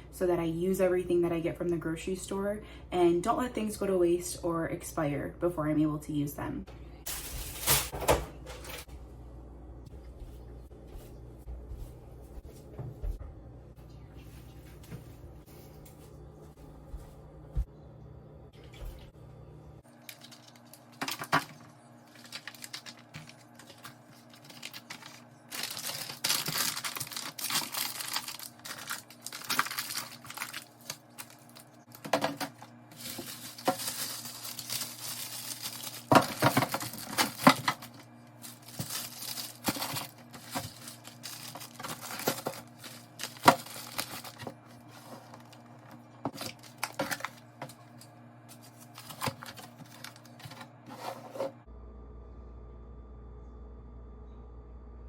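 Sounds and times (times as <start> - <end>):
low steady hum: 0.0 - 55.0
plastic packaging crinkling: 19.9 - 50.8.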